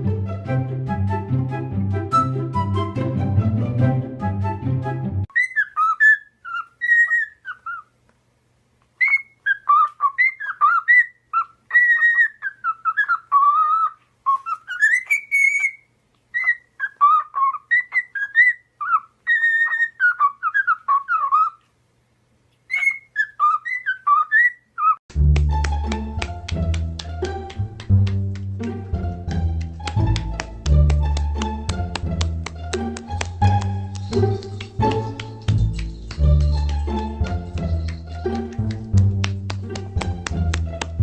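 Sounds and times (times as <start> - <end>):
parrot whistling a tune: 5.3 - 7.8, 9.0 - 15.8, 16.4 - 21.5, 22.7 - 25.0.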